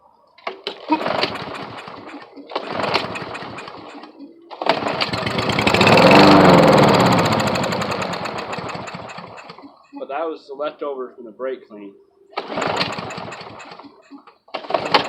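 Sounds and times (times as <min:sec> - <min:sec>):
lawn mower engine starting: 0:00.4 - 0:09.8, 0:12.4 - 0:15.0.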